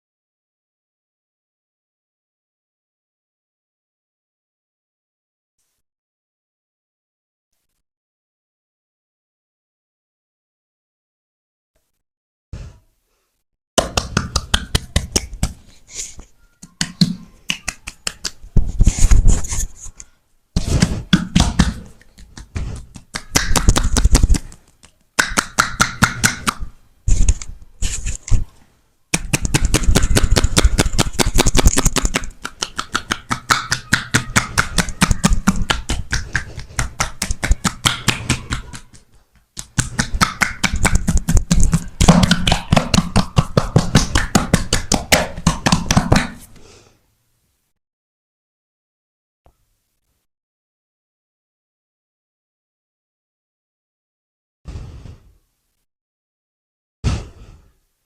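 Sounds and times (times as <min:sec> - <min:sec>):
hands slapping on body: 0:13.8 - 0:15.7, 0:16.6 - 0:19.4, 0:20.6 - 0:28.5, 0:29.1 - 0:46.5.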